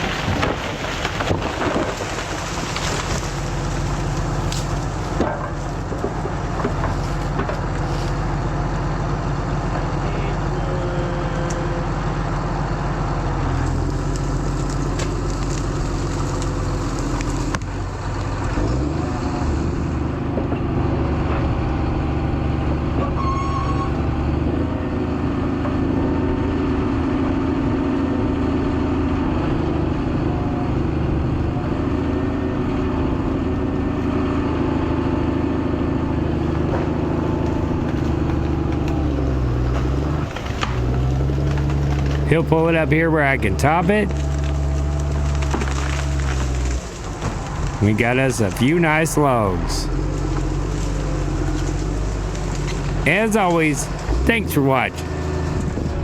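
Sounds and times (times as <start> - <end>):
sharp wood cracks: 0.0 - 8.3, 13.6 - 18.9, 36.4 - 42.4, 43.9 - 47.8, 49.9 - 54.4
diesel engine running: 0.0 - 56.0.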